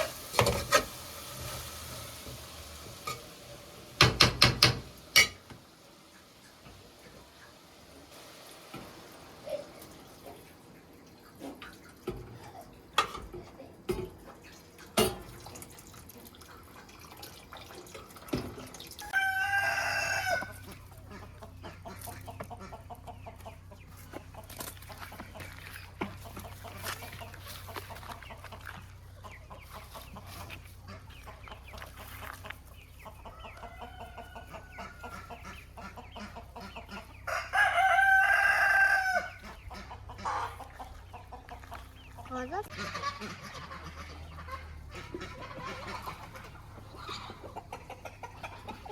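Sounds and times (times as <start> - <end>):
distant rooster crow: 19.0 - 20.6, 33.3 - 35.2, 37.2 - 39.4
rooster crowing: 19.0 - 20.6, 37.3 - 39.4.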